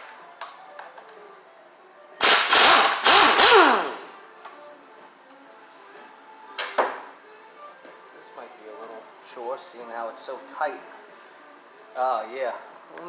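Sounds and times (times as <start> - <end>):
air-powered wrench whining: 2.2 - 4.1.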